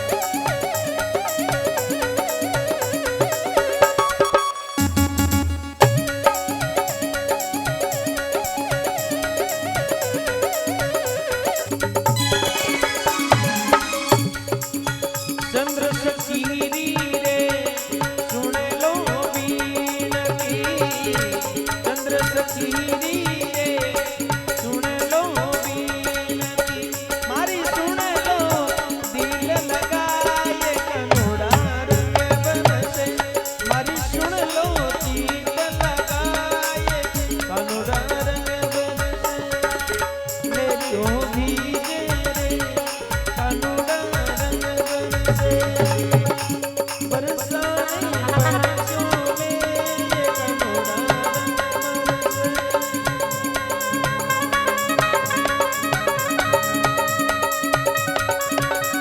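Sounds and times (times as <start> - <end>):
wavering melodic lines: 0.0 - 15.8
hand drumming: 0.0 - 59.0
steady low drum beat: 31.2 - 52.8.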